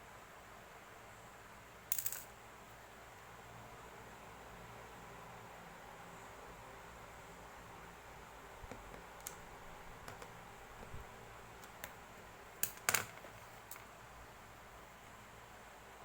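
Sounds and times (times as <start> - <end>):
light clicks and taps: 10.0 - 11.0.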